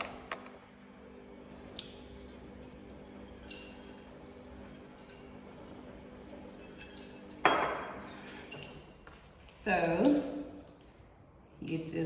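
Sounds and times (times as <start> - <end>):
kitchenware clinking: 3.0 - 5.4, 6.6 - 8.8.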